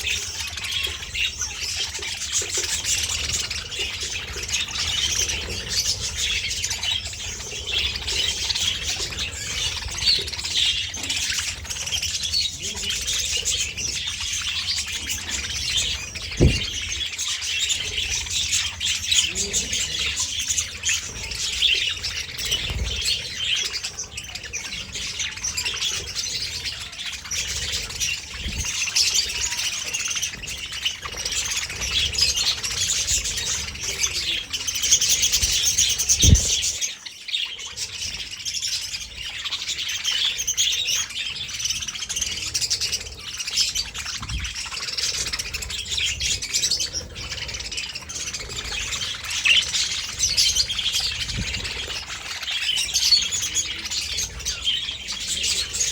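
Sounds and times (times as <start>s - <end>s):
budgerigars chattering and chirping: 0.0s - 55.9s
dull thump: 16.4s - 17.0s.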